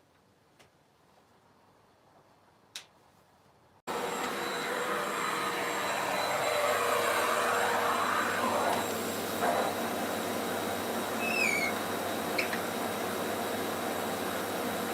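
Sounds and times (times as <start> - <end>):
vacuum cleaner running: 3.9 - 14.9.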